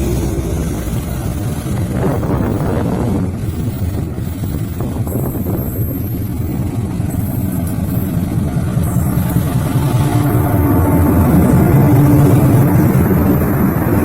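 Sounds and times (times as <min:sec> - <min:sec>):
locomotive low rumble: 0:00.0 - 0:14.0.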